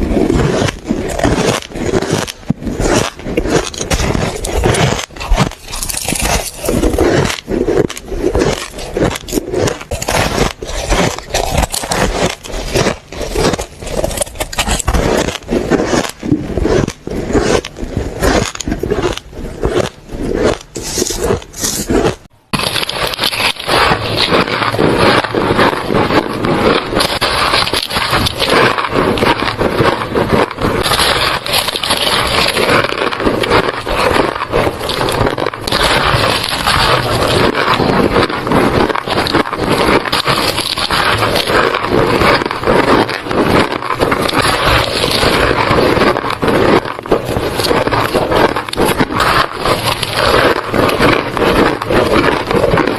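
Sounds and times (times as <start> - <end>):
ice crunching while chewed: 0.0 - 52.9.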